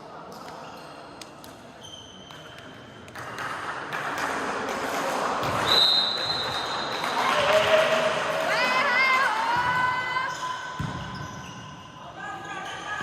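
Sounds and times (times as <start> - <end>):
crowd noise: 0.0 - 13.0
shoe squeaks: 0.3 - 1.2, 1.8 - 2.9, 10.1 - 13.0
volleyball hits: 10.8 - 11.5.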